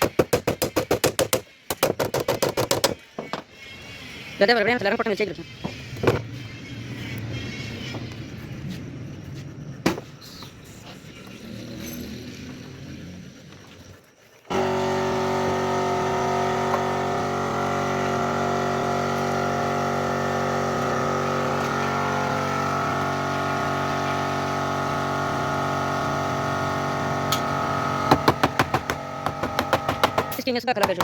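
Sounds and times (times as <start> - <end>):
machine motor humming: 14.5 - 30.4.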